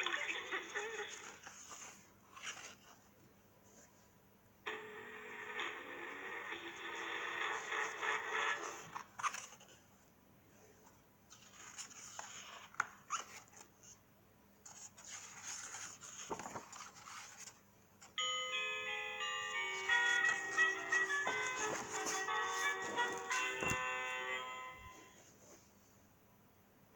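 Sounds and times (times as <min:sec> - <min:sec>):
chiming jingle: 0:18.2 - 0:25.2.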